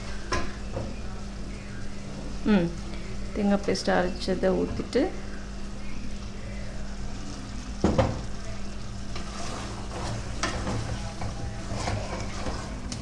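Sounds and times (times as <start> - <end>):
curry sizzling: 0.0 - 13.0
spoon stirring and scraping pot: 9.1 - 13.0.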